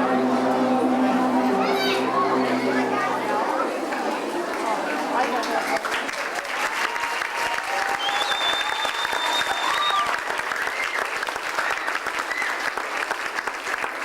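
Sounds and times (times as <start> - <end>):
audience applauding: 0.0 - 14.0
high whistle: 8.0 - 10.1.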